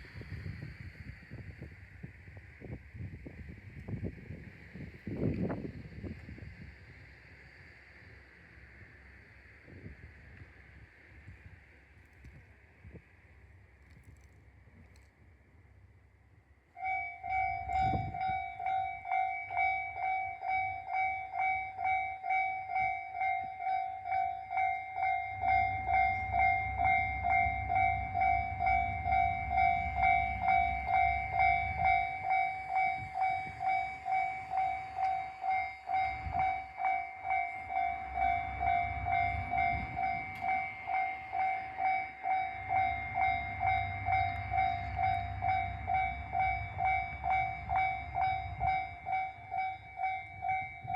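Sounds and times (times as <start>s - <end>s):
diesel train engine rumble: 0.0s - 50.9s
level-crossing alarm ringing: 16.8s - 50.9s.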